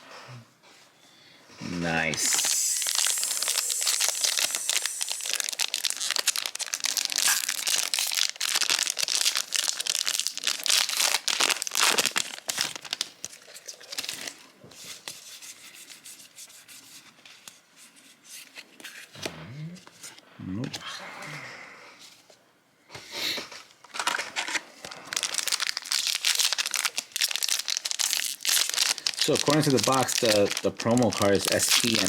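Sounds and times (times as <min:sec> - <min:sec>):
foil wrapper tearing and crinkling: 0:02.2 - 0:14.4, 0:23.9 - 0:32.0.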